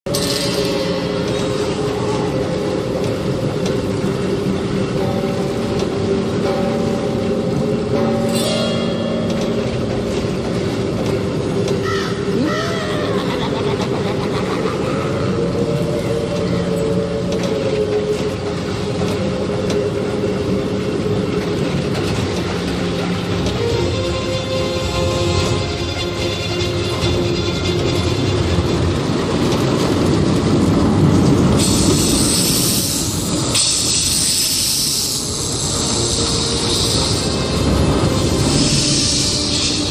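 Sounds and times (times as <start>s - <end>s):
storm wind rumble and hiss: 9.7s - 39.9s
caw-like bird calls: 11.8s - 13.2s.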